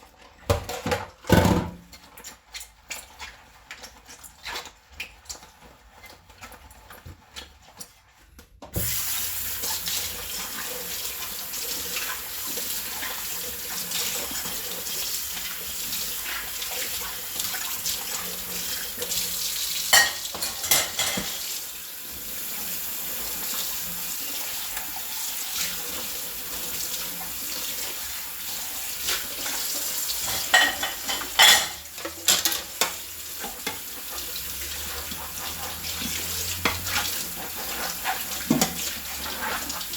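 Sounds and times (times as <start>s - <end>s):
dishes knocking and clinking: 0.5s - 1.8s, 19.9s - 21.4s, 30.2s - 33.0s
water running into sink: 8.8s - 39.9s
plates and bowls clattering: 19.9s - 21.5s, 30.2s - 33.0s.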